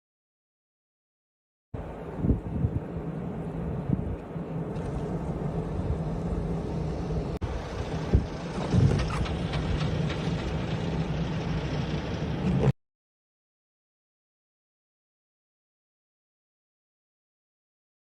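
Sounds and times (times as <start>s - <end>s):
wind noise on microphone: 1.8s - 10.6s
vehicle engine drone: 1.8s - 12.8s.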